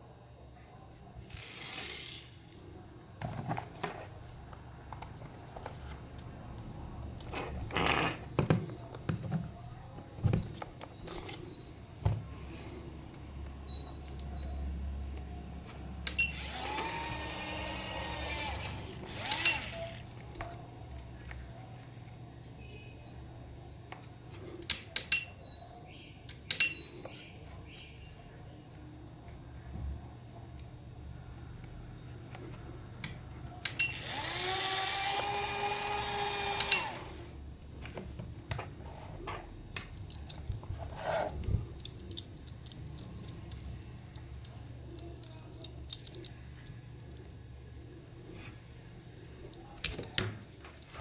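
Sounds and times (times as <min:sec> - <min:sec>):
electric motor whirring: 0:16.3 - 0:20.1, 0:33.9 - 0:37.4.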